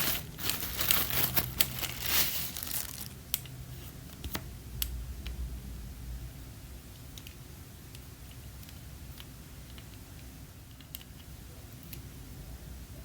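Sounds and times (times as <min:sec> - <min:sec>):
low steady rumble: 0:00.0 - 0:09.6.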